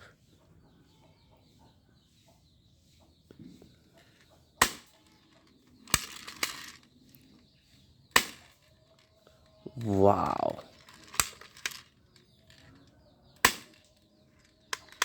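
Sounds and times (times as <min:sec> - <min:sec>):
faint handling sound: 0:03.4 - 0:15.0
toy gun shots: 0:04.6 - 0:05.2, 0:05.8 - 0:06.8, 0:08.1 - 0:08.6, 0:09.8 - 0:11.8, 0:13.3 - 0:15.0.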